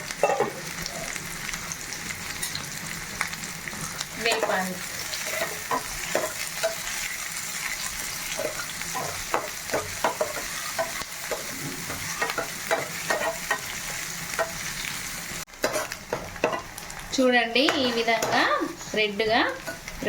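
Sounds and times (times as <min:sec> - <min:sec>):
onion sizzling in hot oil: 0:00.0 - 0:20.0
spoon scraping and tapping pan: 0:04.3 - 0:06.9, 0:08.3 - 0:14.6, 0:15.6 - 0:16.7, 0:17.6 - 0:18.5.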